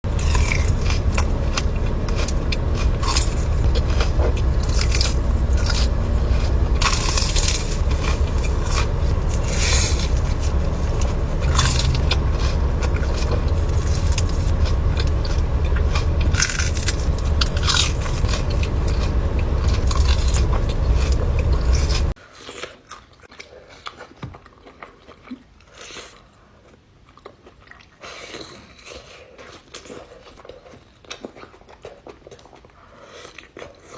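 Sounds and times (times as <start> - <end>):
steady low rumble: 0.0 - 22.2
crunchy bites and chewing: 0.0 - 33.9.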